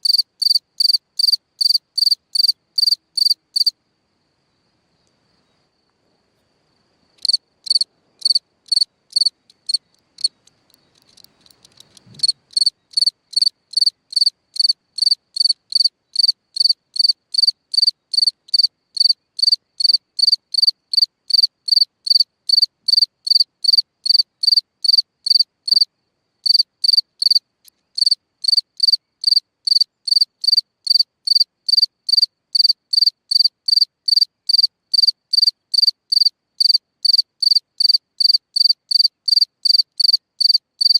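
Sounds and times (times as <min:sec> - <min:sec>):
cricket chirping: 0:00.0 - 0:40.9.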